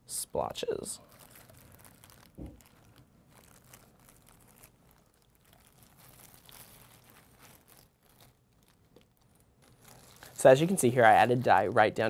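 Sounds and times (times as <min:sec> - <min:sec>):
crinkling and clicking handling noises: 0:01.0 - 0:12.0.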